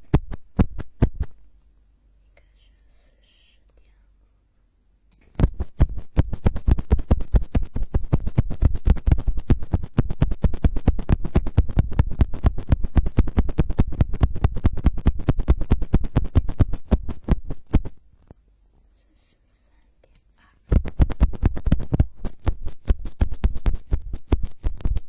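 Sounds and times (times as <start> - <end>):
rapid close scratching strokes: 0.0 - 1.4, 5.4 - 18.0, 20.7 - 25.0.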